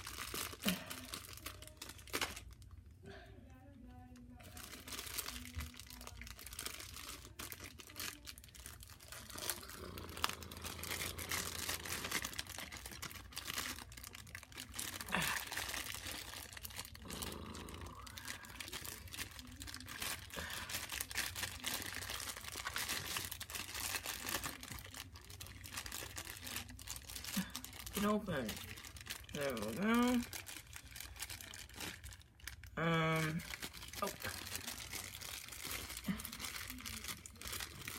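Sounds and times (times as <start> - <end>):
small clicks and crackles: 0.0 - 2.9, 3.9 - 32.7, 33.4 - 37.9
toy packaging crinkling: 0.0 - 3.0, 3.9 - 37.9.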